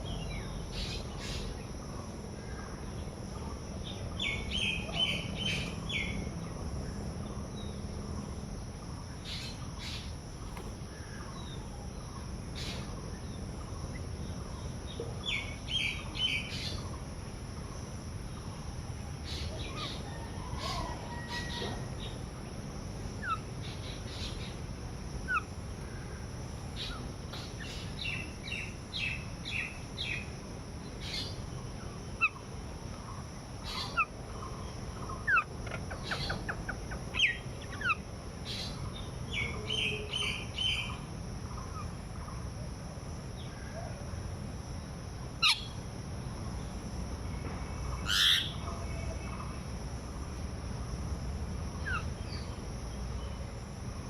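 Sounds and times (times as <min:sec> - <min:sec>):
birds chirping and calling: 0:35.0 - 0:40.9, 0:45.4 - 0:45.7, 0:48.0 - 0:49.5.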